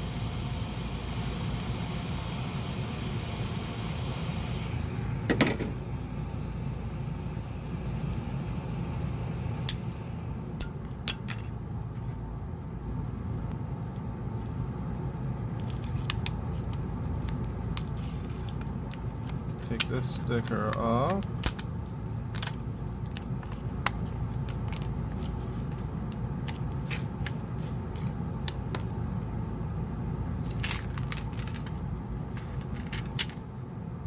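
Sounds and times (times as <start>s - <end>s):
heat gun blowing air: 0.0s - 10.4s.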